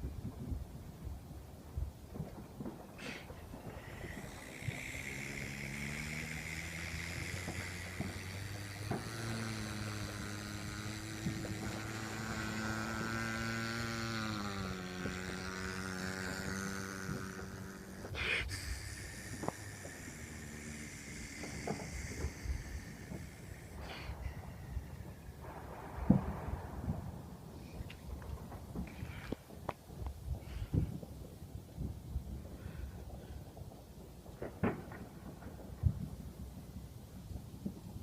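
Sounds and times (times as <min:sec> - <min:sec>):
sharp pops: 0:02.1 - 0:27.2
motor vehicle engine running: 0:03.0 - 0:29.2.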